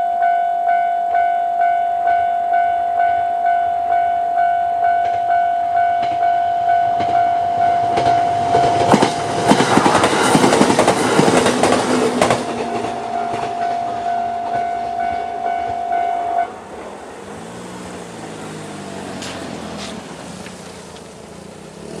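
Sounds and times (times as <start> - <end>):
electronic crossing bell dinging: 0.0 - 9.4, 12.5 - 16.6
train wheels clattering: 6.0 - 21.0
vehicle engine: 7.0 - 22.0.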